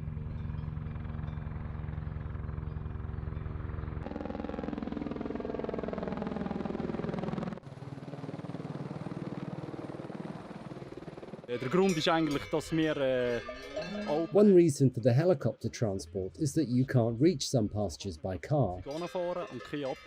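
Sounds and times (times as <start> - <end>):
helicopter rotor beating: 0.0 - 14.6.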